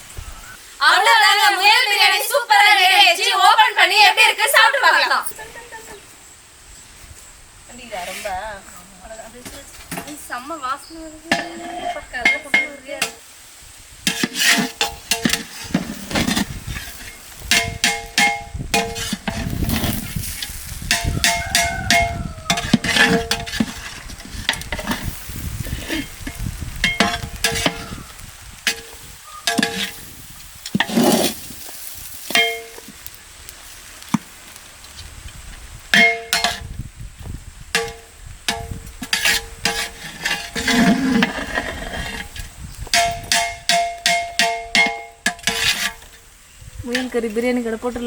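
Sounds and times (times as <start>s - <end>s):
metal ladle scraping pot: 11.3s - 13.2s, 14.0s - 31.6s, 35.9s - 36.7s, 37.8s - 46.2s
metal pot ringing: 17.5s - 19.0s, 20.9s - 23.5s, 32.4s - 32.9s, 36.0s - 36.6s, 43.0s - 45.3s.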